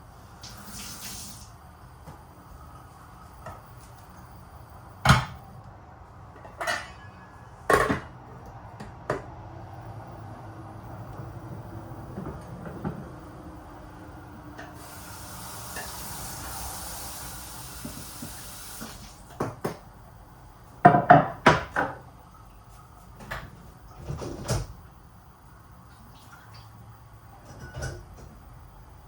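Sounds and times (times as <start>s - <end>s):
steady hiss: 0.0s - 4.9s, 14.6s - 19.4s
cookware clattering: 6.5s - 8.1s.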